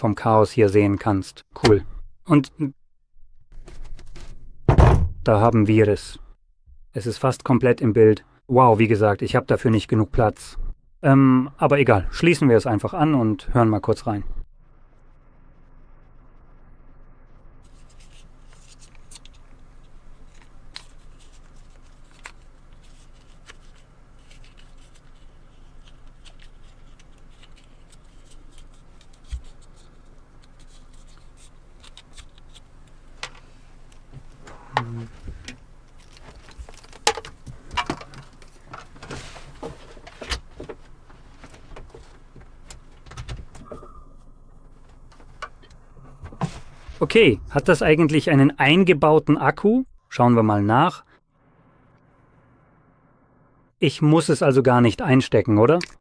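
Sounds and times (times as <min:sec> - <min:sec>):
faint steady hum: 0:10.6 - 0:54.0
speaker handling clicks and knocks: 0:33.2 - 0:44.0, 0:44.6 - 0:46.7.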